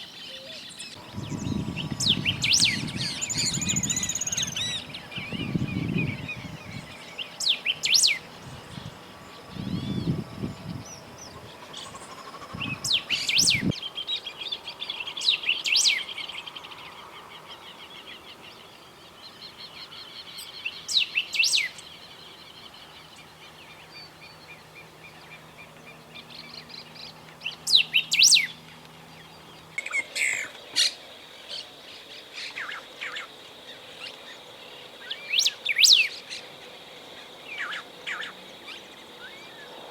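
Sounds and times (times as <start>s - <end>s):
bird whistling song: 0.0s - 12.0s, 12.6s - 16.3s, 19.9s - 21.9s, 26.4s - 28.6s, 35.1s - 36.2s
faint continuous trill: 0.8s - 39.9s
low rumble: 1.0s - 7.0s.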